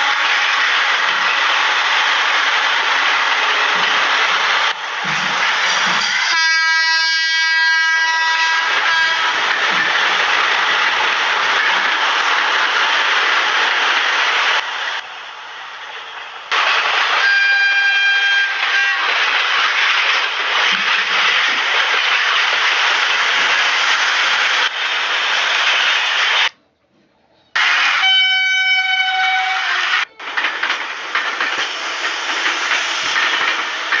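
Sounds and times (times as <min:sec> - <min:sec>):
moving train rushing noise: 0:00.0 - 0:26.6, 0:27.5 - 0:34.0
locomotive air horn blasts: 0:06.1 - 0:09.3, 0:17.2 - 0:19.0, 0:28.0 - 0:29.9.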